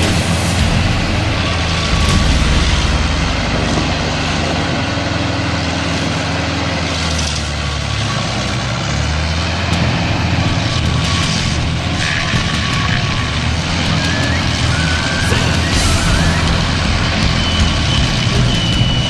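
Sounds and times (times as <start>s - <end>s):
mechanical clatter: 0.0s - 5.6s
heavy machine engine running: 0.0s - 19.0s.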